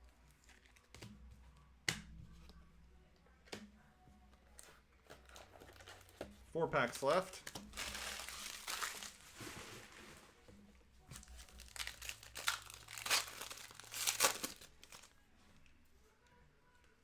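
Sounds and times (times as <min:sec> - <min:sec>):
wrapper tearing and crinkling: 0:06.9 - 0:10.3, 0:11.2 - 0:15.1.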